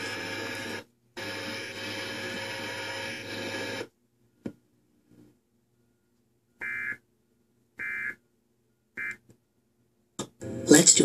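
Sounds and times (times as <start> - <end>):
loud buzzing noise: 0.0 - 3.9
shrill digital squawks: 6.6 - 7.0, 7.8 - 8.2, 9.0 - 9.2.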